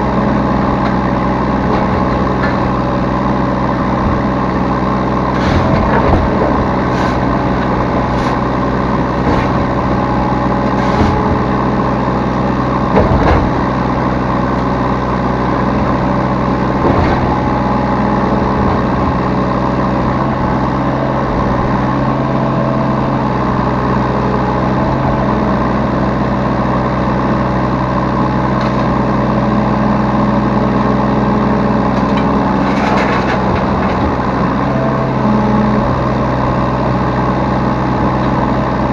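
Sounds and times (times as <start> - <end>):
diesel engine running: 0.0 - 38.9
metal knocks and clanks: 5.3 - 11.8.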